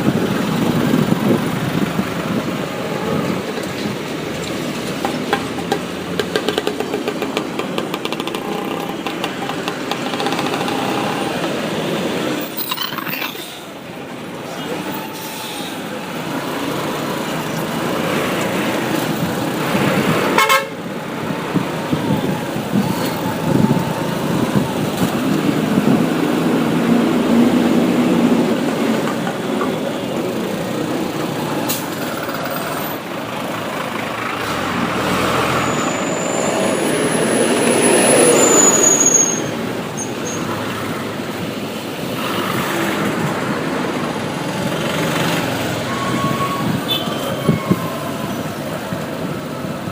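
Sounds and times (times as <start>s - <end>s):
road traffic: 0.0s - 49.9s
vehicle horns tooting: 20.3s - 20.8s, 45.8s - 48.0s.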